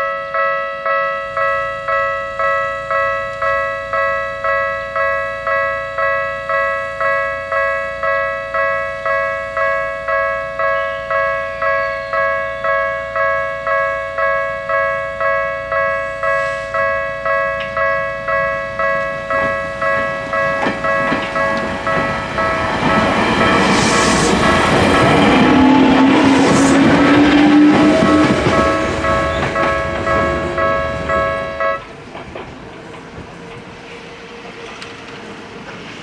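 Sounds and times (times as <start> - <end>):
level crossing bell clanging: 0.0 - 31.9
approaching train rumble: 14.7 - 36.0.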